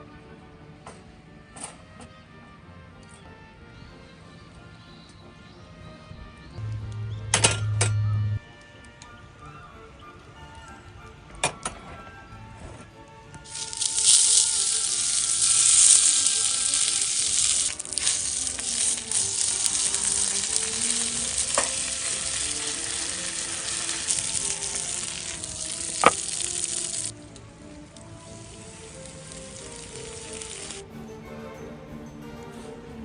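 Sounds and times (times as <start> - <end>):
dumplings sizzling in a pan: 13.4 - 30.9.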